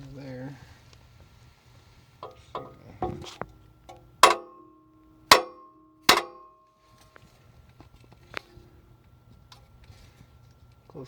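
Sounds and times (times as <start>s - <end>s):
hammer striking steel punch: 4.2s - 6.7s.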